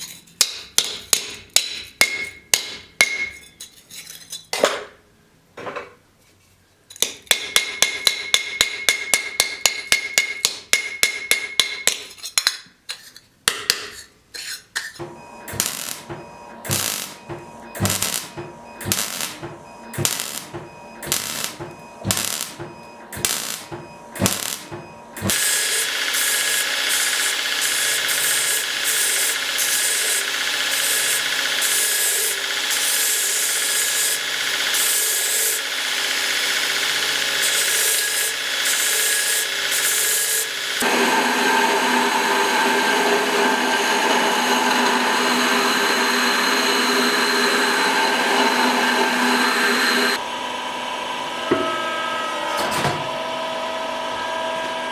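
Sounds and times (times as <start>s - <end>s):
electric power tool running: 15.3s - 52.5s.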